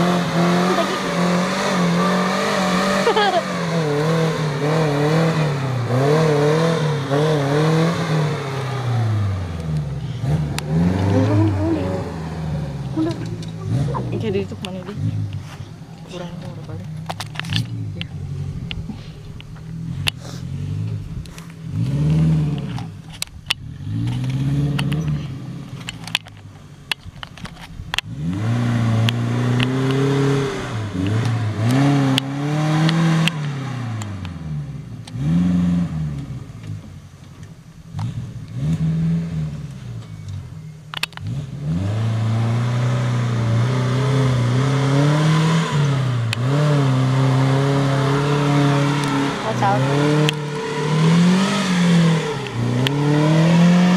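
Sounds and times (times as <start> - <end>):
car engine revving: 0.0 - 53.9.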